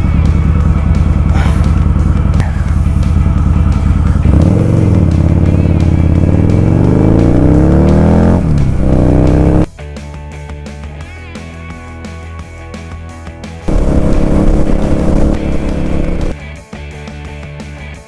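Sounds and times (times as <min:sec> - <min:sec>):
motorcycle engine revving: 0:00.0 - 0:09.7, 0:13.7 - 0:16.4.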